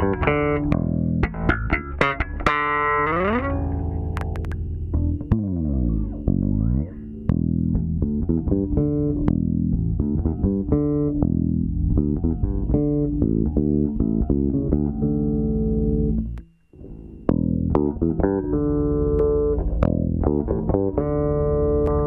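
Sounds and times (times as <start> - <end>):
plucked electric bass notes: 0.0 - 22.0.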